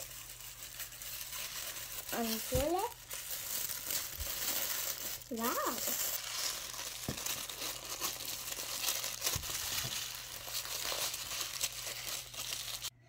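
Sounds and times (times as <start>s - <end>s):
packaging crinkling and rustling: 0.0s - 12.9s.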